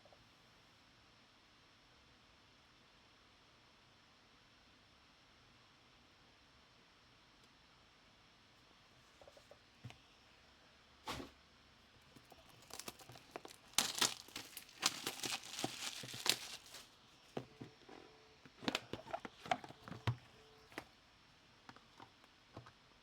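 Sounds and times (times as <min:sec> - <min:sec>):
foil wrapper tearing and crinkling: 0:12.2 - 0:17.0.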